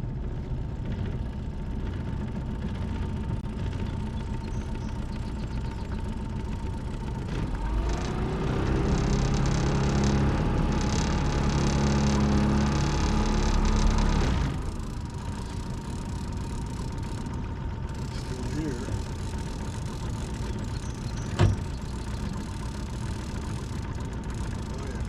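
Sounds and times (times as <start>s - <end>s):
boat motor running: 0.0s - 25.0s.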